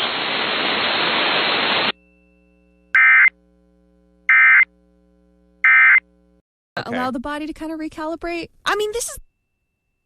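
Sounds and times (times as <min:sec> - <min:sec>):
radio static hiss: 0:00.0 - 0:02.0.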